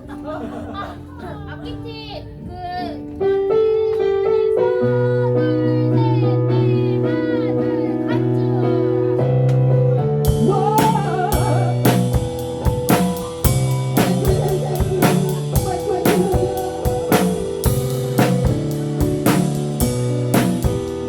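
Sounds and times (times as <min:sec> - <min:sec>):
sustained keyboard chords: 0:00.0 - 0:21.0
bass line: 0:08.4 - 0:21.0
drum kit cymbal and drum hits: 0:10.2 - 0:21.0.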